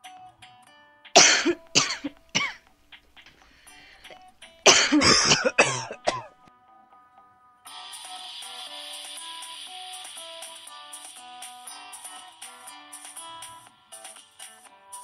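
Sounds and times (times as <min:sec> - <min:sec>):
person coughing: 0:01.2 - 0:02.6, 0:03.8 - 0:06.3.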